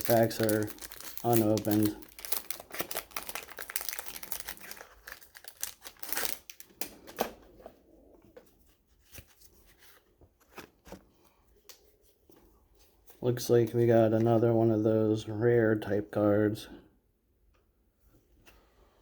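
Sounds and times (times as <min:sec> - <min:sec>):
cards handled ticking: 0:00.0 - 0:04.9
wrapper tearing and crinkling: 0:00.0 - 0:07.2.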